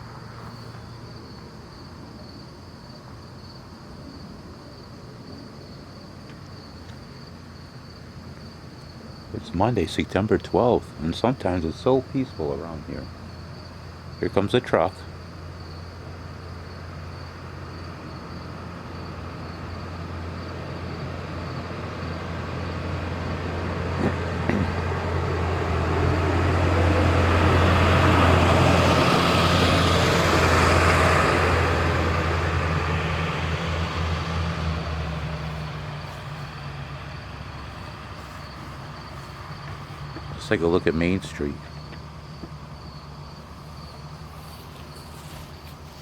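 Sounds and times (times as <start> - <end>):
truck engine hum: 0.0 - 46.0
tyre noise: 35.0 - 36.8, 37.5 - 40.4, 43.4 - 46.0.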